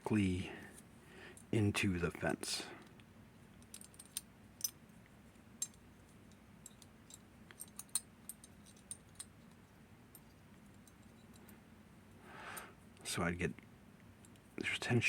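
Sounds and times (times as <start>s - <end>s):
faint steady hum: 0.0s - 15.0s
small metallic clicks: 3.6s - 4.8s, 5.6s - 11.6s.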